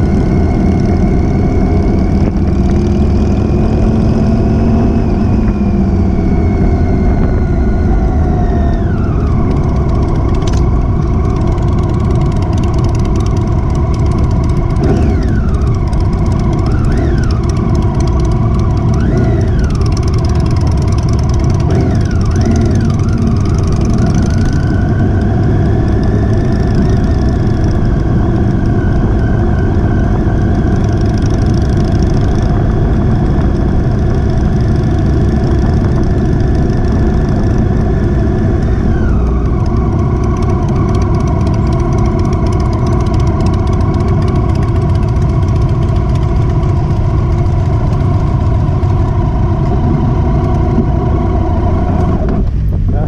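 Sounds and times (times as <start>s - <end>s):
motorcycle engine running: 0.0s - 53.0s
wind rumble on microphone: 0.0s - 53.0s.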